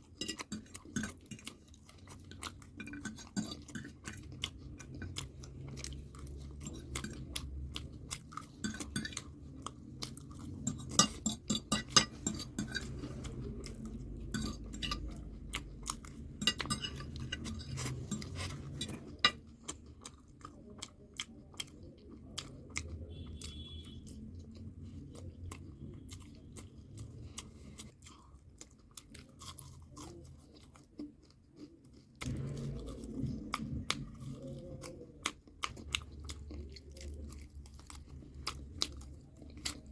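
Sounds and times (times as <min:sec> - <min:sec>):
person chewing and crunching food: 0:00.0 - 0:39.9
cutlery clinking on dishes: 0:10.6 - 0:13.2, 0:14.3 - 0:15.2, 0:16.4 - 0:19.4.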